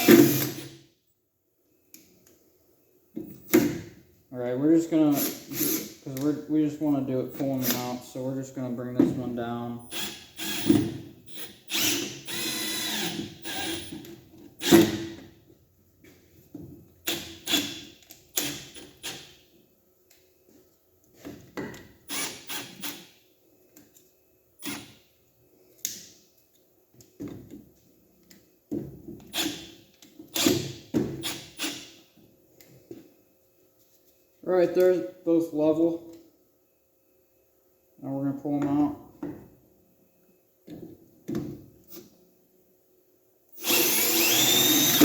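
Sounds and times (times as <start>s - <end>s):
drill driving screw into wood: 0.0s - 0.8s, 5.1s - 6.0s, 9.8s - 15.2s, 17.0s - 19.4s, 22.1s - 23.1s, 24.6s - 25.0s, 29.3s - 32.0s, 43.6s - 45.0s.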